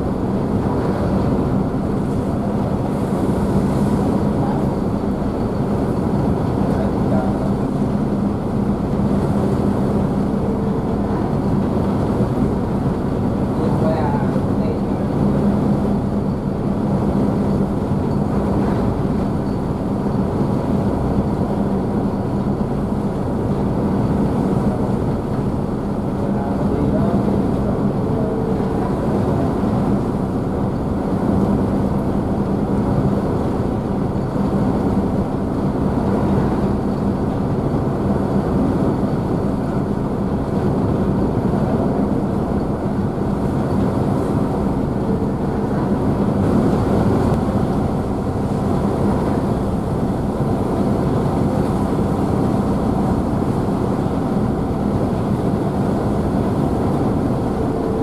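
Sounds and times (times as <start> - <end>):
ship engines humming: 0.0 - 58.0
wake water rushing: 20.3 - 58.0.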